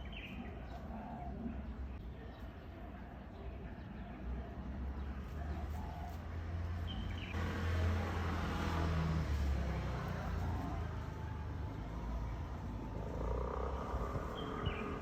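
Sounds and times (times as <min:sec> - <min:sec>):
vehicle passing with low rumble: 0:04.2 - 0:15.0.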